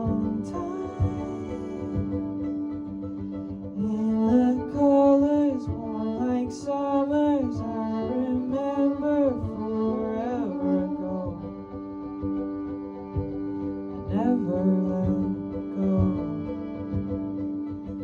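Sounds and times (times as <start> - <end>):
slow song with singing: 0.0 - 18.0.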